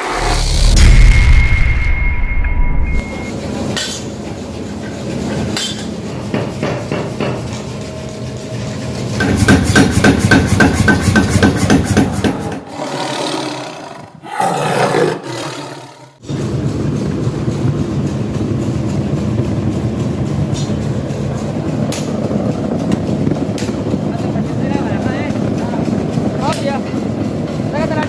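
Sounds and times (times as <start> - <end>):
workshop machinery running: 3.0 - 12.6
hammering on hot metal: 5.6 - 7.5, 9.2 - 12.6.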